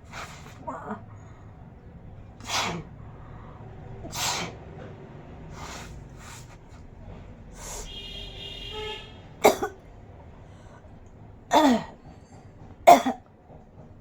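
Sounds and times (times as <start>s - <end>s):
loud sharp sneezes: 2.4s - 3.0s, 4.0s - 4.6s.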